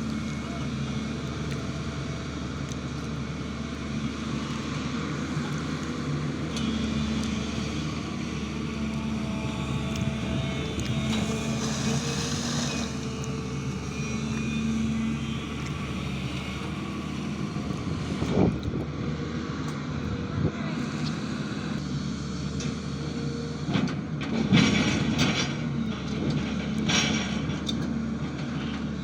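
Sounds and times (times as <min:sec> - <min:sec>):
excavator diesel engine running: 0:00.0 - 0:29.0
excavator knocks and scrapes: 0:23.6 - 0:29.0.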